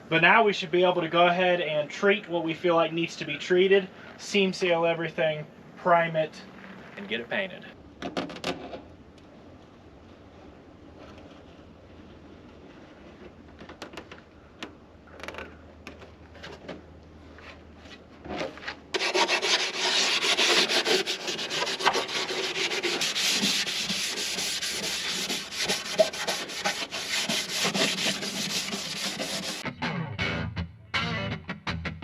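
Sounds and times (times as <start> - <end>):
sanding on bare metal: 19.0 - 29.6.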